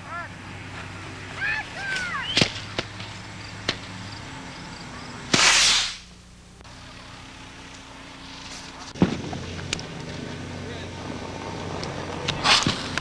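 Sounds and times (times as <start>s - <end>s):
fireworks cracking: 1.3s - 4.3s, 5.3s - 6.2s, 8.4s - 10.4s, 11.0s - 13.0s
loud firework blast: 5.3s - 6.1s, 9.0s - 9.6s, 12.4s - 12.9s.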